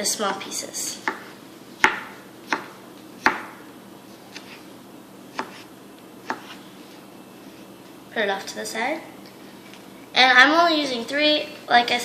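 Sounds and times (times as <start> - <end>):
knife chopping on cutting board: 1.0 - 3.6, 5.3 - 6.6.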